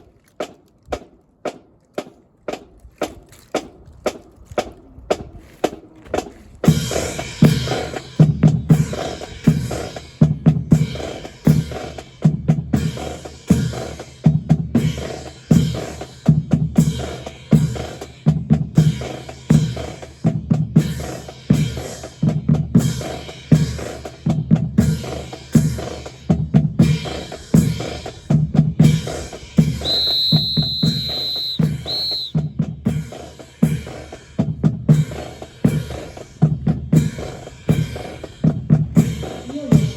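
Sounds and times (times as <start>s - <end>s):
marching snare and bass drums: 0.0s - 39.9s
high steady tone: 29.8s - 32.3s.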